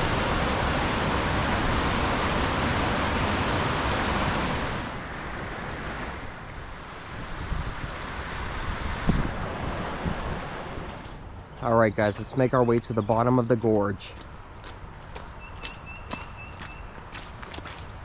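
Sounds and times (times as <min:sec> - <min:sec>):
waterfall rushing: 0:00.0 - 0:11.1.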